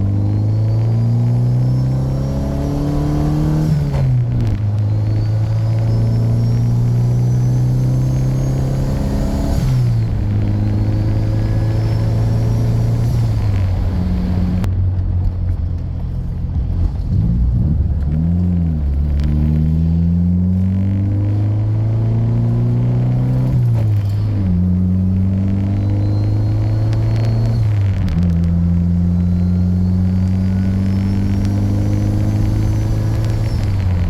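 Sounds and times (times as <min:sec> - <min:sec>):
car engine revving through gears: 0:00.0 - 0:14.7, 0:16.6 - 0:34.0
faint high turbo whine: 0:00.4 - 0:18.1.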